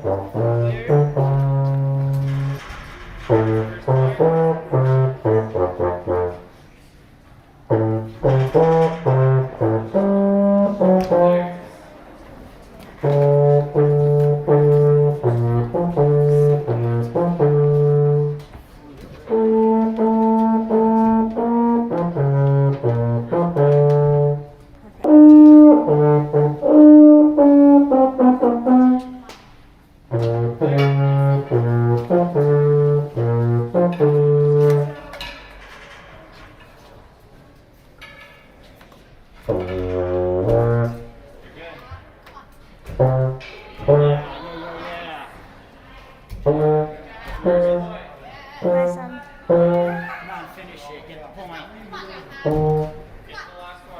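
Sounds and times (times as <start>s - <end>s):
baritone horn melody: 0.0s - 6.7s, 7.7s - 11.9s, 13.0s - 18.5s, 19.2s - 29.3s, 30.1s - 35.0s, 39.4s - 41.3s, 42.9s - 44.4s, 46.4s - 48.0s, 48.6s - 50.1s, 52.4s - 53.2s.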